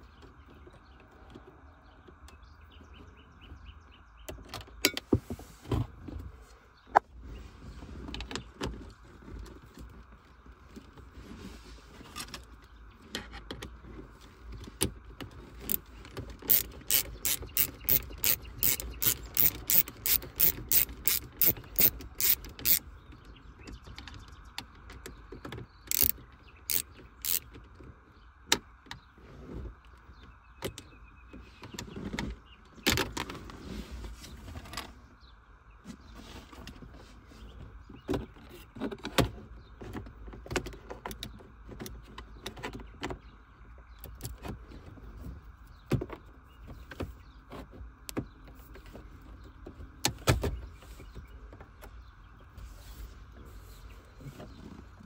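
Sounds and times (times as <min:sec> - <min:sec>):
sharp mechanical clicks: 0:15.6 - 0:22.9, 0:25.8 - 0:27.6.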